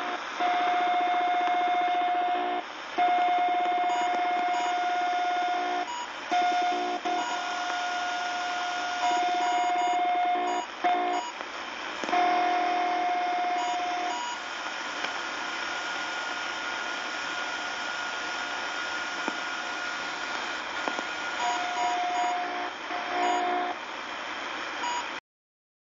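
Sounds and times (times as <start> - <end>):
faint high steady tone: 0.0 - 11.4, 12.1 - 14.4, 21.3 - 23.8
radio beeping tone: 0.0 - 11.4, 12.1 - 14.4, 21.2 - 23.8
radio static: 0.0 - 23.9.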